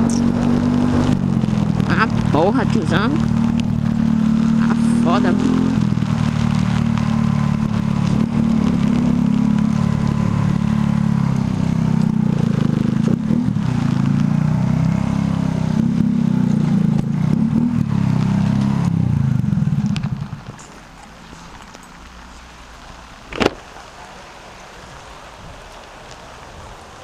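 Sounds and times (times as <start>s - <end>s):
motorcycle engine running: 0.0s - 21.0s
small clatters: 19.8s - 22.5s.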